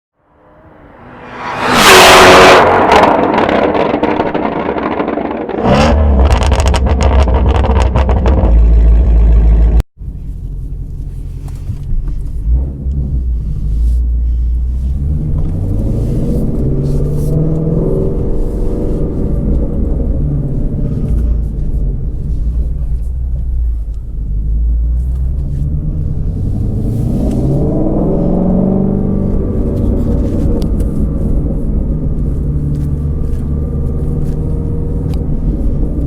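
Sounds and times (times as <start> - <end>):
car engine revving: 0.3 - 10.8, 12.4 - 22.9, 24.4 - 36.0
exhaust crackles and pops: 2.9 - 13.0.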